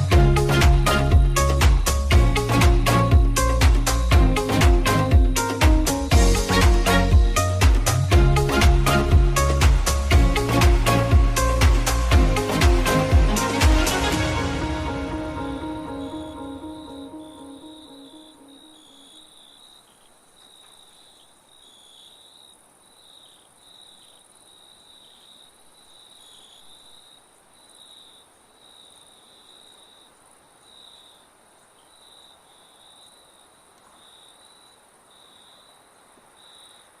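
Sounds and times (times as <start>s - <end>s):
insects trilling chirps: 15.4s - 37.0s.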